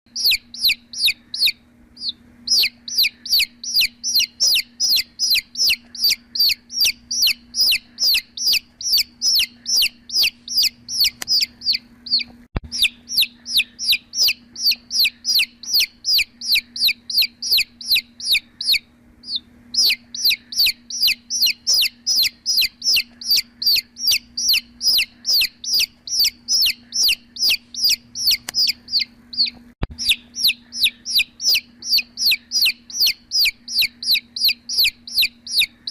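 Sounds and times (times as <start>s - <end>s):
chicks peeping: 0.1s - 35.9s
steady low hum: 0.1s - 35.9s
sharp clicks: 11.0s - 11.4s, 28.2s - 28.8s.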